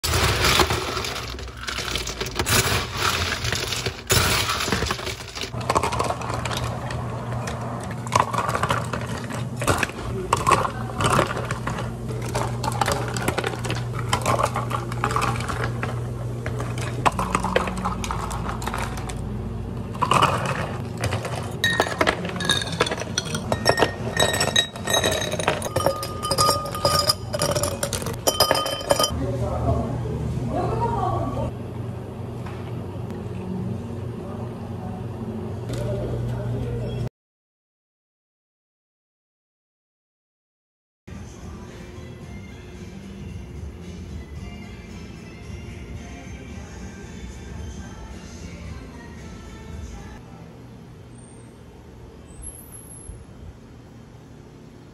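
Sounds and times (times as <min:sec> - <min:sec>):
ice cubes clinking against glasses: 0:00.0 - 0:06.6, 0:20.0 - 0:29.1
low equipment hum: 0:00.1 - 0:37.1
ringing glass clinks: 0:21.6 - 0:29.1.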